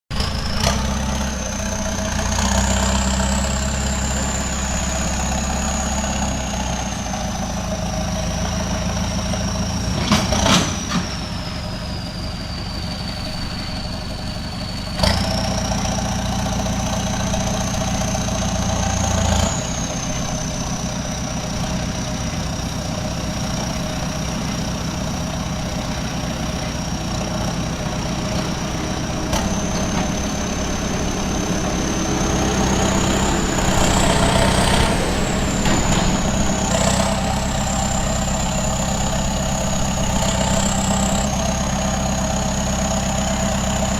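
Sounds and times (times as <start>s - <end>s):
bulldozer diesel engine running: 0.0s - 43.9s
high whine: 10.8s - 43.9s.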